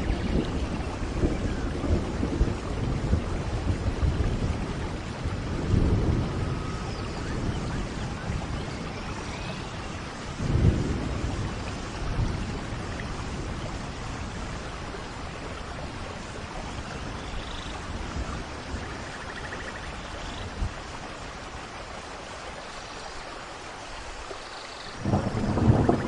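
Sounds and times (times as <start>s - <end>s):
thunder rolling: 0.0s - 9.2s, 10.3s - 14.8s, 25.0s - 26.0s
steady rain falling: 0.0s - 26.0s.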